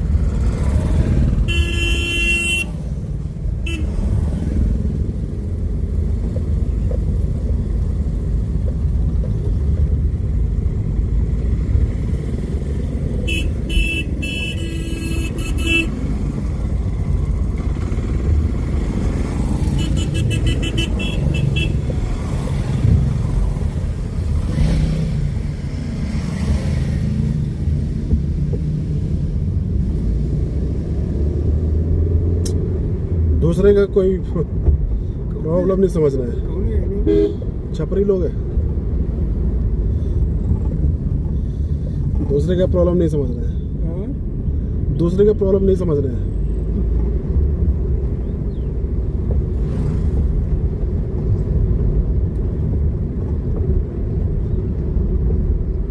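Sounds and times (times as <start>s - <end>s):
horns honking: 1.4s - 2.8s, 3.6s - 4.0s, 13.2s - 16.2s, 19.7s - 22.0s, 37.0s - 37.4s
motorcycle engines running: 15.7s - 28.5s.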